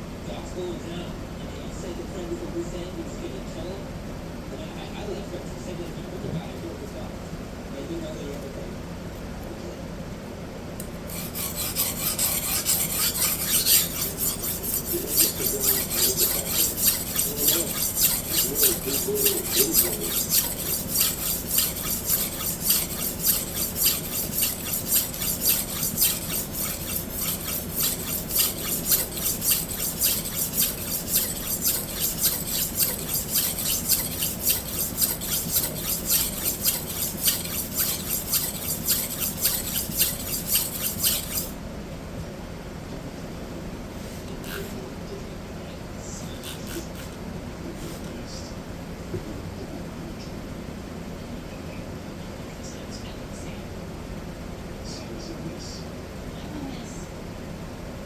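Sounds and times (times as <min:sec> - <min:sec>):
knife scraping on sharpening stone: 0:11.0 - 0:41.6, 0:44.5 - 0:44.7, 0:46.4 - 0:47.2.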